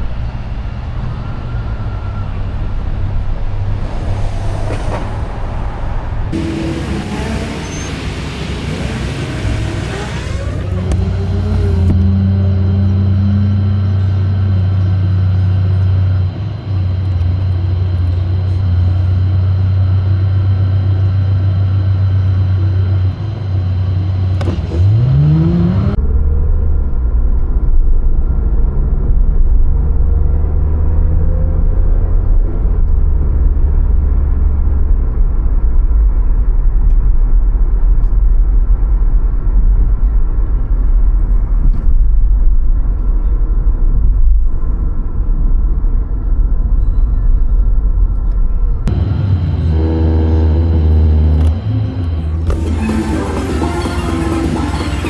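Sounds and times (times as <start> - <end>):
engine revving: 0.0 - 32.1, 48.9 - 55.0
car engine and road noise: 0.0 - 55.0.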